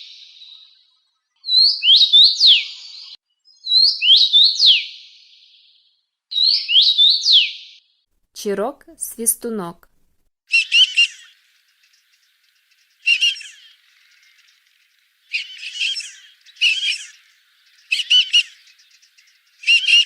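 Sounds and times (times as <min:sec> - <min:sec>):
duck whistled calls: 0:10.5 - 0:11.3, 0:13.0 - 0:13.6, 0:19.6 - 0:20.0.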